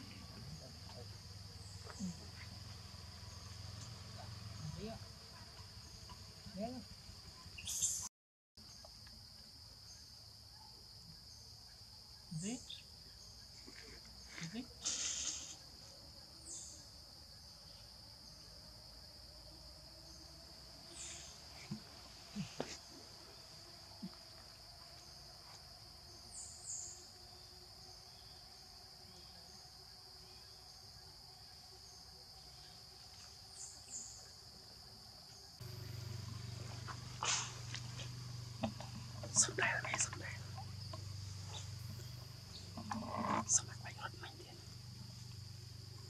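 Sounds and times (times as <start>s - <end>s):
insects trilling: 0.0s - 46.0s
low steady hum: 35.6s - 46.0s.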